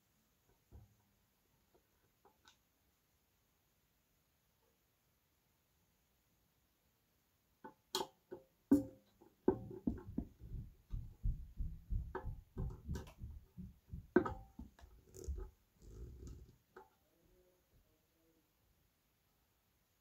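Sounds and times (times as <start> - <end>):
knocks thumps and rattles: 9.5 - 16.4.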